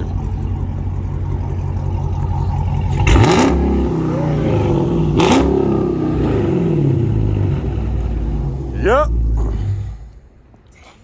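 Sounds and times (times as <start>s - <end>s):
car engine idling and revving: 0.0s - 10.7s.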